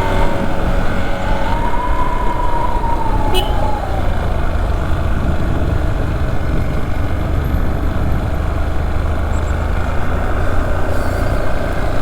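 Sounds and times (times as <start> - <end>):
motorcycle engine running: 0.0 - 10.8
wind rumble on microphone: 0.0 - 12.0.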